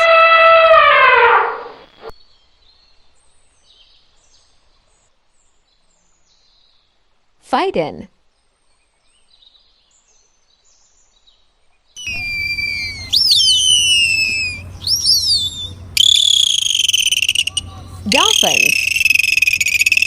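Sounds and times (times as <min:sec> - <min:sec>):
dolphin whistles: 0:00.0 - 0:01.9, 0:12.0 - 0:20.0
fast buzzing pulse train: 0:12.0 - 0:20.0
low steady rumble: 0:12.0 - 0:20.0.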